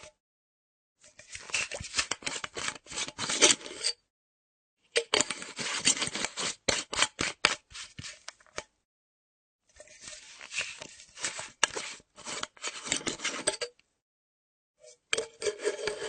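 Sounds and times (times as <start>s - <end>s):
metal screw cap twisting: 5.0s - 7.6s, 9.8s - 13.8s, 15.1s - 16.0s.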